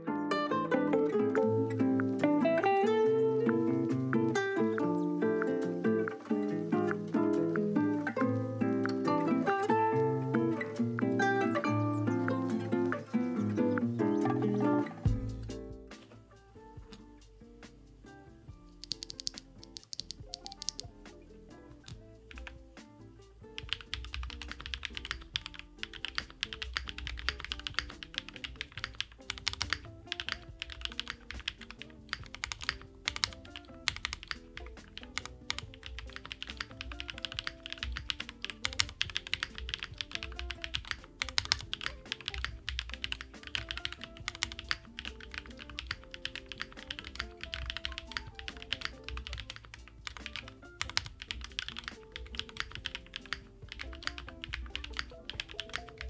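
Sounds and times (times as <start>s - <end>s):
soft background music: 0.0s - 56.0s
fast mechanical keyboard typing: 18.8s - 20.9s, 23.6s - 56.0s.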